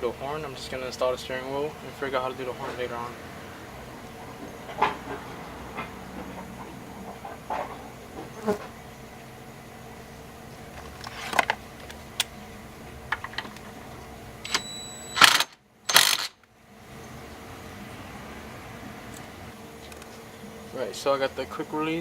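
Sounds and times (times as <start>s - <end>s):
metallic clicks of small parts: 14.5s - 16.5s.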